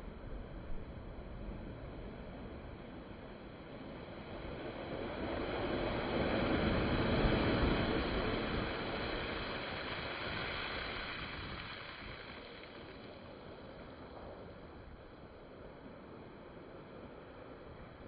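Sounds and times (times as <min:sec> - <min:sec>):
sea waves breaking: 0:04.5 - 0:14.5.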